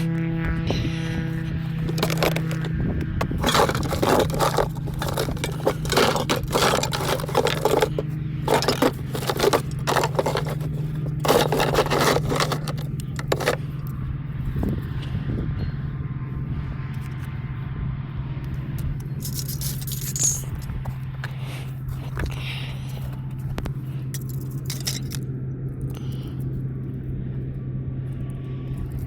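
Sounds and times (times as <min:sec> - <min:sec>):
scraping strokes: 0:00.9 - 0:13.7.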